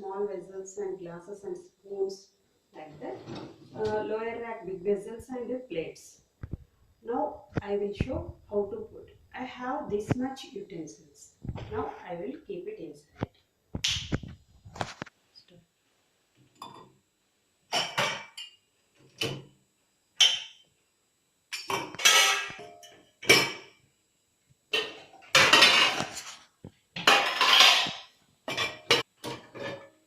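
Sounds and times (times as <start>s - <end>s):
dishes and cutlery clattering: 17.7s - 18.6s, 21.7s - 23.7s, 24.8s - 26.3s, 27.0s - 30.0s.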